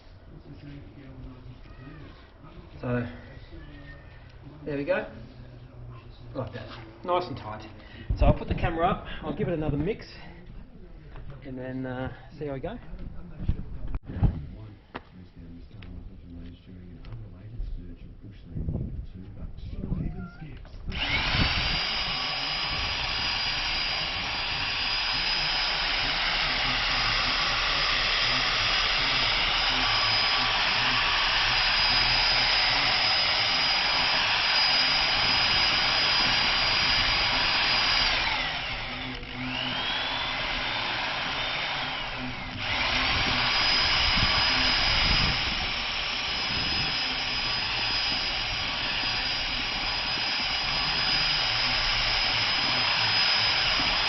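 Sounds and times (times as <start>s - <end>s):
electric drill mixer whining: 20.9s - 54.0s.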